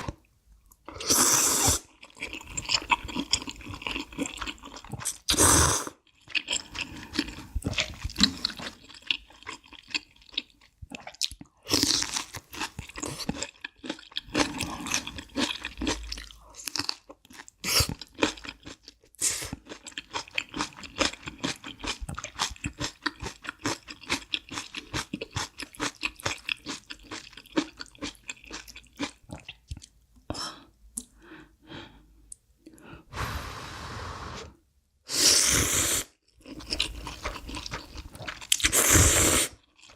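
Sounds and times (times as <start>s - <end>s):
chewing crunchy food: 1.8s - 5.4s, 6.0s - 30.0s, 36.1s - 38.9s, 39.5s - 39.9s
breathy hiss: 33.1s - 34.6s.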